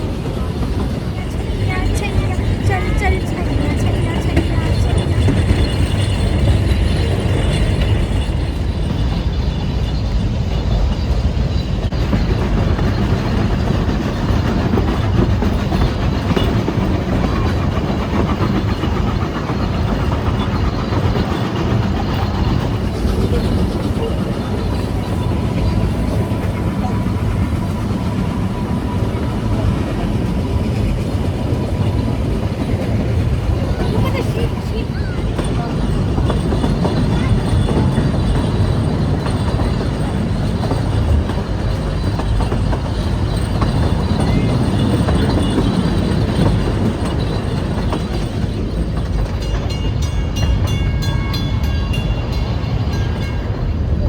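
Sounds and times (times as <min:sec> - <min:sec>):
train wheels rumbling on rails: 0:00.0 - 0:54.0.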